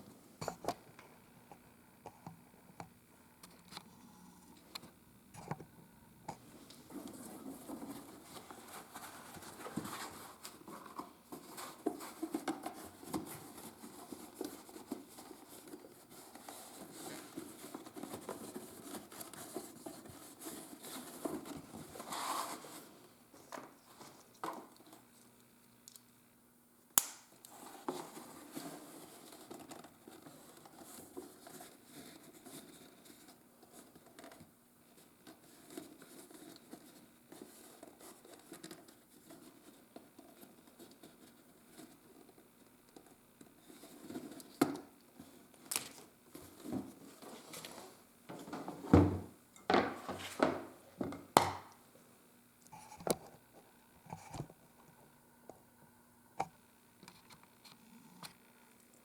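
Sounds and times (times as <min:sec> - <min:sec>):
sharp click: 0:27.0 - 0:27.2.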